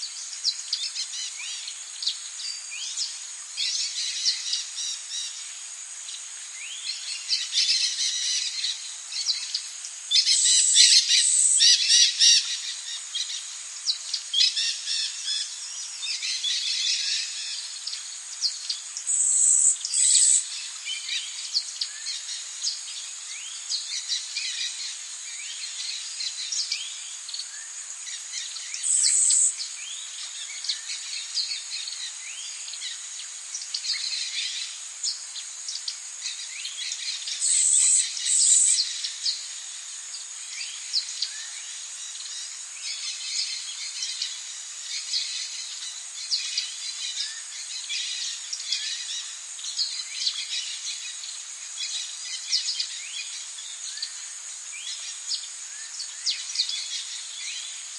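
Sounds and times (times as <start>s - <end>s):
birds chirping and calling: 6.7s - 22.8s, 28.2s - 29.6s, 33.7s - 39.5s
high-pitched insect drone: 19.0s - 20.8s, 21.4s - 29.6s, 30.2s - 57.9s.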